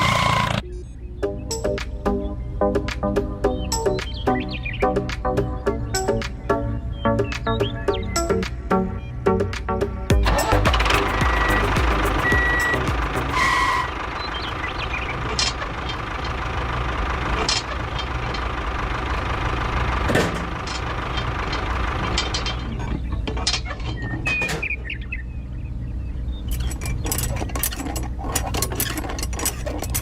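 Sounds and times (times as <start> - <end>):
machine motor humming: 10.2 - 22.8.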